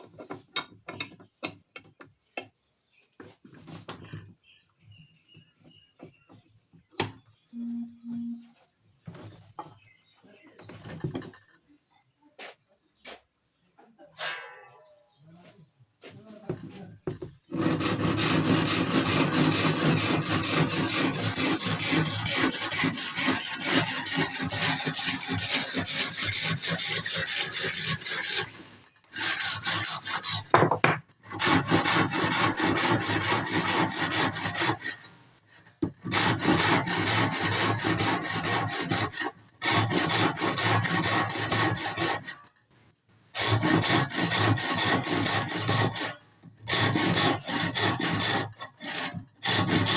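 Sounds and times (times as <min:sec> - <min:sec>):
cutting tool rasping wood: 0:07.6 - 0:08.4, 0:16.6 - 0:42.5, 0:43.3 - 0:49.9.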